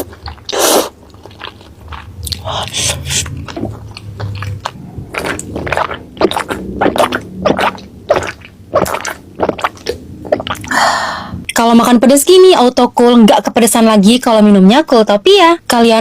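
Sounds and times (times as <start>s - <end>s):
wet chewing and mouth clicks: 0.0s - 10.8s.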